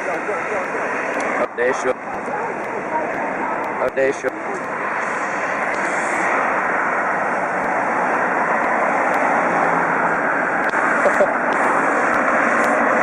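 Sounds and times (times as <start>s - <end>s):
highway traffic rushing: 0.0s - 13.0s.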